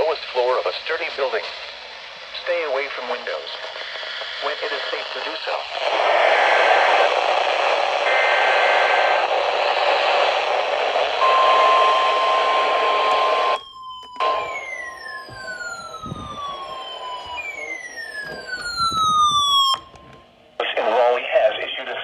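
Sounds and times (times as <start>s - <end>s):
radio static hiss: 0.0s - 13.6s, 20.0s - 22.0s
siren-like falling tones: 11.2s - 20.4s.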